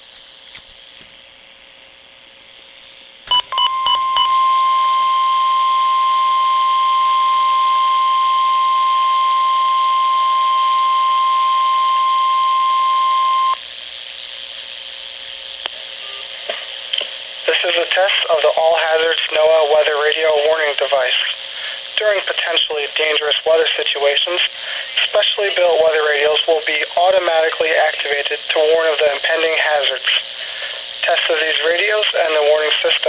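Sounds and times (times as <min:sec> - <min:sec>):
steady alarm tone: 0:00.0 - 0:33.0
short beeps: 0:03.3 - 0:13.6
radio hiss: 0:04.2 - 0:33.0.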